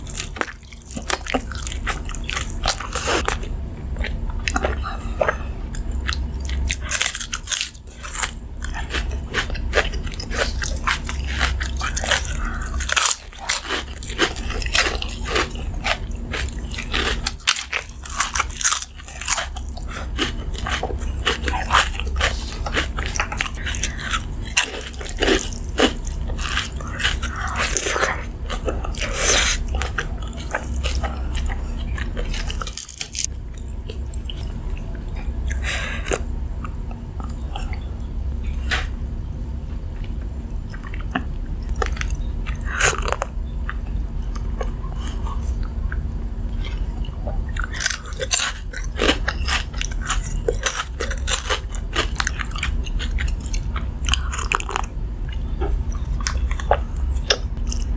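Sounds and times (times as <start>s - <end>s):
person chewing crisp food: 0.0s - 57.9s
steady low hum: 0.0s - 57.9s.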